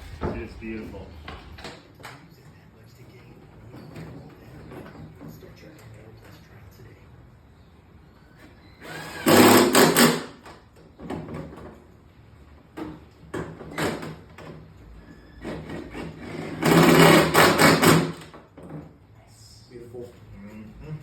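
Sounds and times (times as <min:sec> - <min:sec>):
rustling and clattering: 0:00.0 - 0:02.2.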